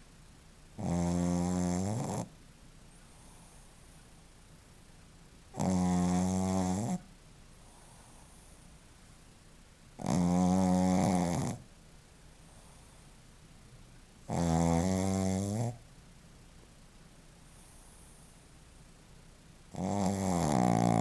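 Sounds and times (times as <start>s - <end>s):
dog snoring: 0.8s - 2.4s, 5.5s - 7.1s, 10.0s - 11.7s, 14.2s - 15.8s, 19.7s - 21.0s.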